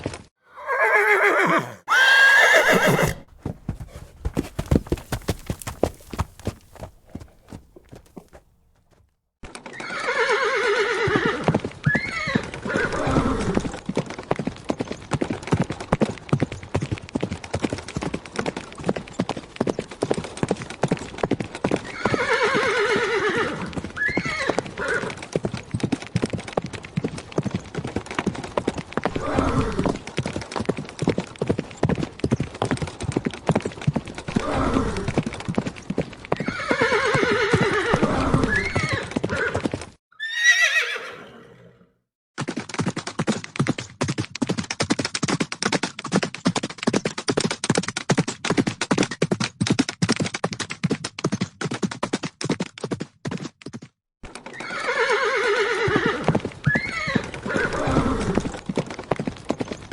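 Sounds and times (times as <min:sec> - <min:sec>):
horse hooves galloping: 0:00.0 - 0:10.2, 0:11.0 - 0:41.0, 0:42.4 - 0:59.9
horse whinnying: 0:00.5 - 0:07.6, 0:09.8 - 0:13.7, 0:21.9 - 0:25.2, 0:34.3 - 0:35.2, 0:36.4 - 0:39.6, 0:40.2 - 0:41.9, 0:54.5 - 0:58.6.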